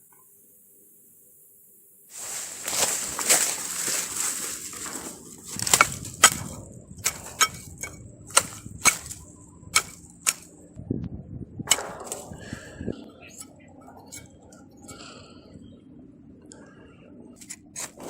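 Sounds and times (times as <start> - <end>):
rush of hissing noise: 2.0 - 5.2
sharp hard knocks: 5.6 - 9.2, 9.8 - 10.5.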